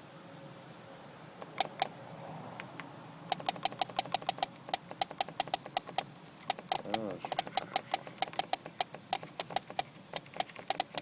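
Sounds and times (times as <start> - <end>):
fuel pump clicking: 1.4 - 1.9, 3.3 - 11.0.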